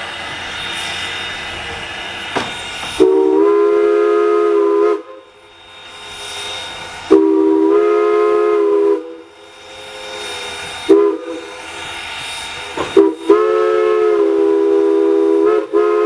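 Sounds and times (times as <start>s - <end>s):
steam hissing: 0.0s - 16.0s
train running noise: 0.0s - 16.0s
steam whistle blasts: 2.9s - 5.4s, 6.8s - 12.0s, 12.8s - 16.0s.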